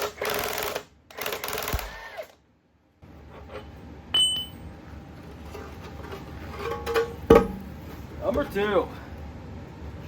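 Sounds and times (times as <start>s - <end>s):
pneumatic impact wrench hammering: 0.0s - 2.3s.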